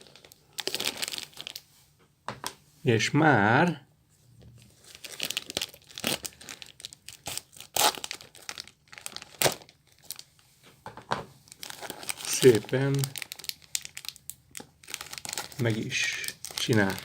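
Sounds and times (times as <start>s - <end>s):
packaging crinkling and tearing: 0.0s - 1.7s, 4.6s - 10.4s, 11.5s - 17.0s.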